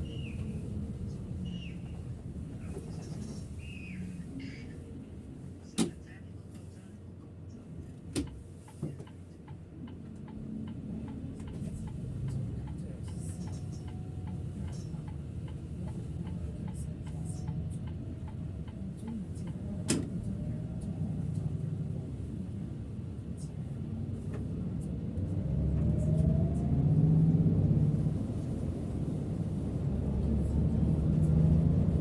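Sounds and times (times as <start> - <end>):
bus engine rumble: 0.0 - 32.0
turn signal ticking: 9.1 - 19.6.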